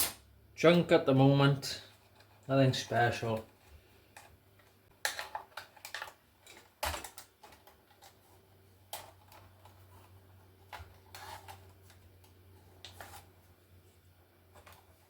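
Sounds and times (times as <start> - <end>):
laptop parts clicking and clattering: 3.2 - 13.3, 14.5 - 15.0.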